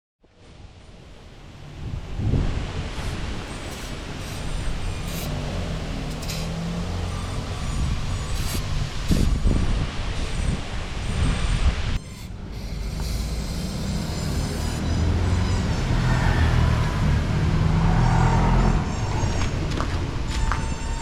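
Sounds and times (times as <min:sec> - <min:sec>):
motorcycle engine running: 0:03.0 - 0:10.4.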